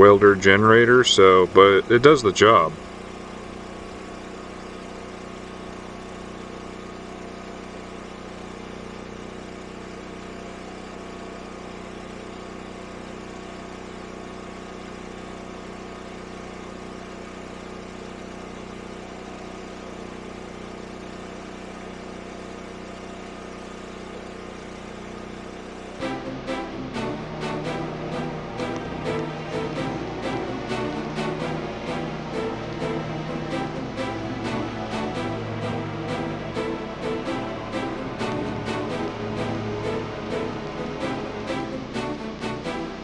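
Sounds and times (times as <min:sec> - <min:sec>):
portable generator engine running: 0:00.0 - 0:14.2, 0:23.7 - 0:43.0.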